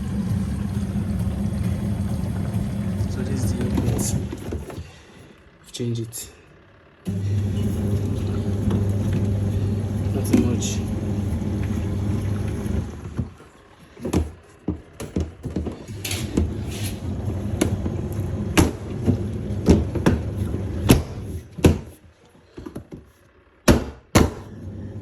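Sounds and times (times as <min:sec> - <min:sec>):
low machine hum: 0:00.0 - 0:25.0
knocks and clatters of handling: 0:13.1 - 0:16.6, 0:20.9 - 0:23.2.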